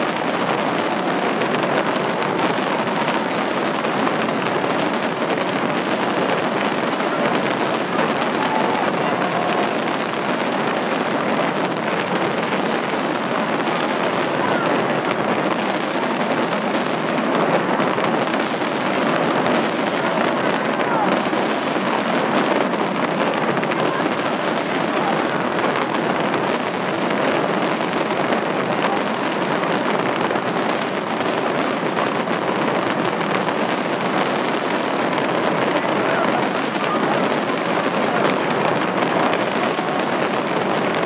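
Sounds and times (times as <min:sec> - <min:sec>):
crowd voices: 0:00.0 - 0:41.0
fireworks bursting and crackling: 0:00.0 - 0:41.0.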